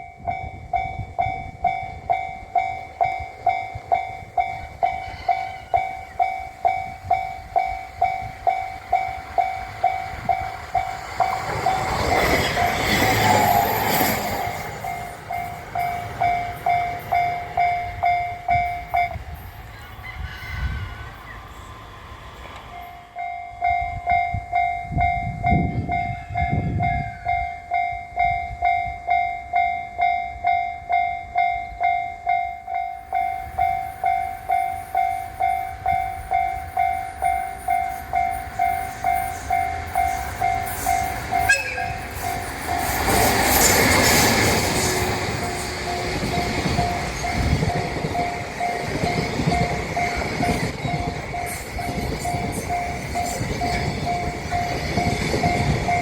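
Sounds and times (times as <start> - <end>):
level crossing bell ringing: 0.0 - 19.2
train passing over crossing: 0.0 - 56.0.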